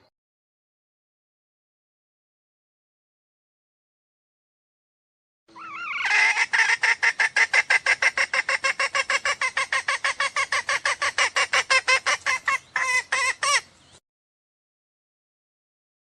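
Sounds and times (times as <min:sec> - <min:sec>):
fowl lure call clucking: 0:05.5 - 0:13.7.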